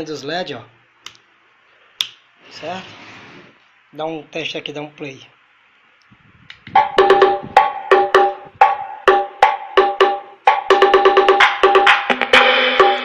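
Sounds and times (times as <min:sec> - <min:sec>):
loud music through speaker: 0:10.4 - 0:13.0.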